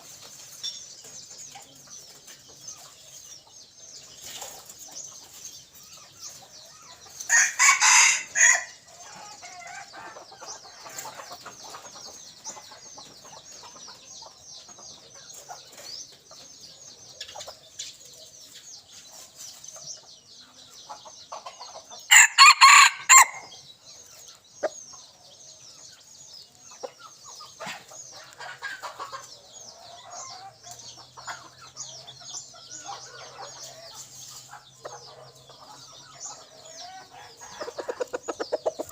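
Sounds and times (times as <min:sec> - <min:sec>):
rooster crowing: 0:07.3 - 0:08.8, 0:22.1 - 0:23.5.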